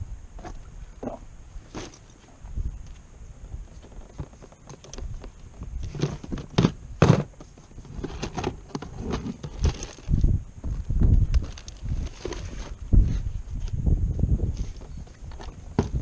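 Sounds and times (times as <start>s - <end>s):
kayak gear knocks and thumps: 15.3s - 16.0s.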